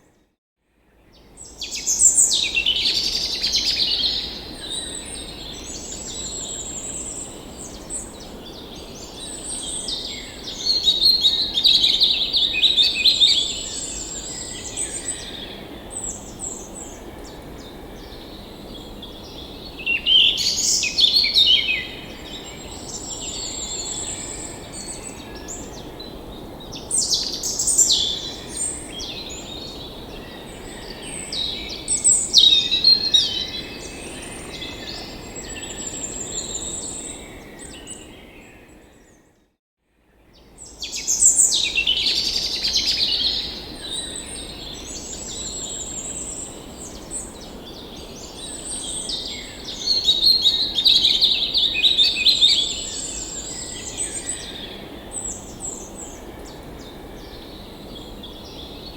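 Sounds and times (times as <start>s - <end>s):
birds singing and calling: 40.4s - 58.9s.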